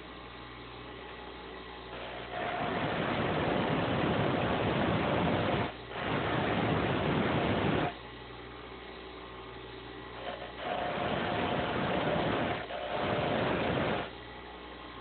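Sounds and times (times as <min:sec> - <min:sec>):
grinder motor running: 0:10.2 - 0:14.1.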